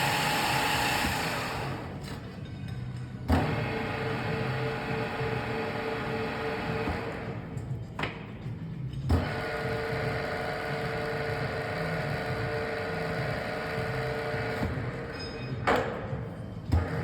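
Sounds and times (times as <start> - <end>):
milling machine whine: 0.0 - 2.2.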